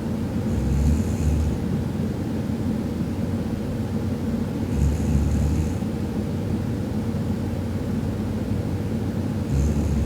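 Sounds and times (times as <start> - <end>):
woman snoring: 9.5 - 10.0.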